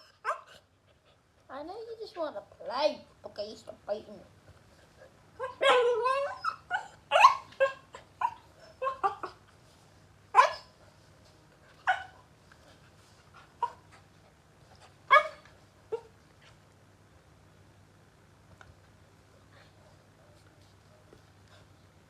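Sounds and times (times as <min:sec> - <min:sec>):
puppy yapping: 0:05.4 - 0:09.4, 0:10.3 - 0:10.7, 0:11.8 - 0:12.2, 0:15.1 - 0:16.1.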